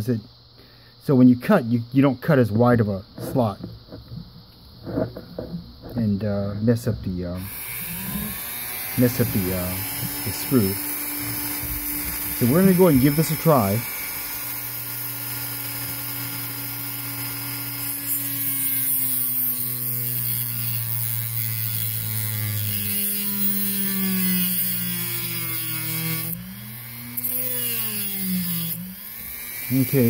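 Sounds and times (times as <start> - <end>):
rotary tool cutting screw: 7.4 - 30.0.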